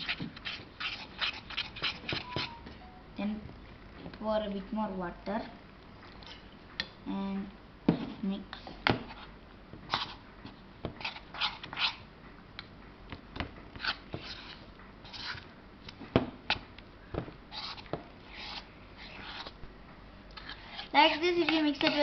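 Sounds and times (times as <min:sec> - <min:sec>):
wet scraping sounds: 0:00.0 - 0:02.6, 0:13.8 - 0:15.5, 0:17.5 - 0:19.6
batter being mixed in a bowl: 0:00.0 - 0:03.4, 0:07.8 - 0:12.1, 0:13.1 - 0:19.7, 0:20.3 - 0:22.0.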